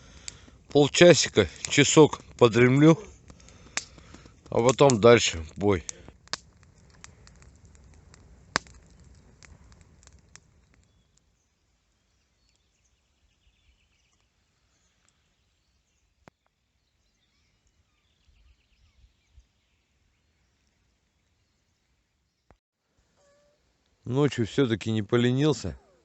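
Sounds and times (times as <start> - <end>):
campfire crackling and popping: 0.0 - 15.2
faint bird chirps: 10.8 - 23.6.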